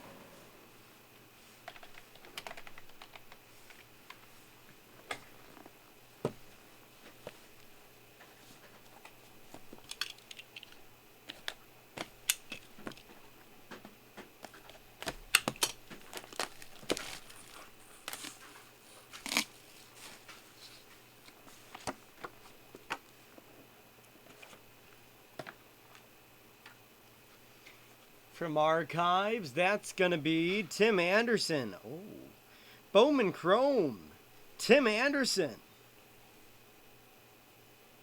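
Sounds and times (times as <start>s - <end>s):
packaging tearing: 15.6s - 18.4s
card packaging rustling: 15.8s - 20.8s.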